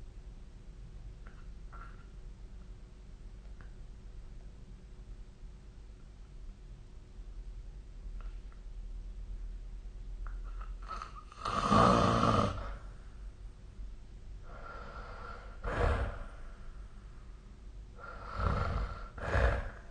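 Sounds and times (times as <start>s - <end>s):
person snoring: 10.8s - 12.8s, 14.5s - 16.5s, 18.0s - 19.9s.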